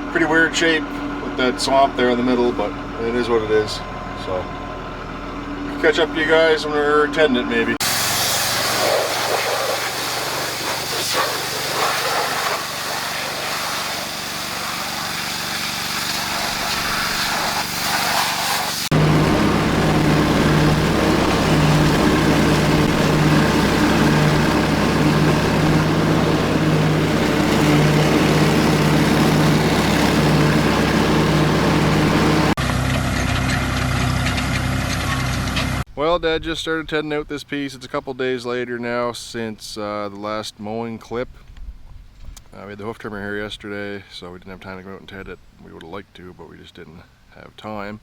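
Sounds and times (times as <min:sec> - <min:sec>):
different engine sound: 0:00.0 - 0:11.7, 0:12.4 - 0:35.9
tractor engine running: 0:00.0 - 0:35.9.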